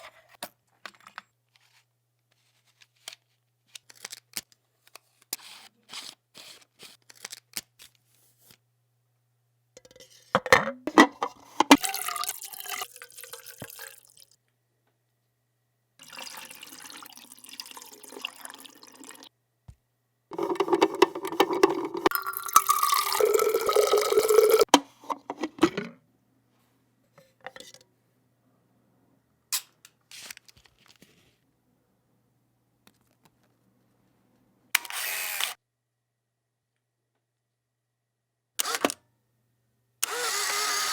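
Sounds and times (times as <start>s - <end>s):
liquid pouring into container: 11.7s - 14.4s, 16.0s - 19.3s, 20.3s - 24.7s.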